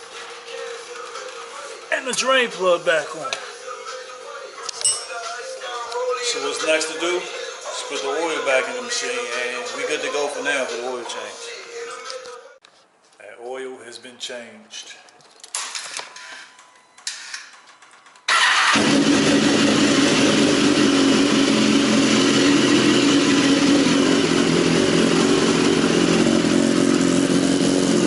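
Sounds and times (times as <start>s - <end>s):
motorcycle engine starting and idling: 17.4s - 28.0s.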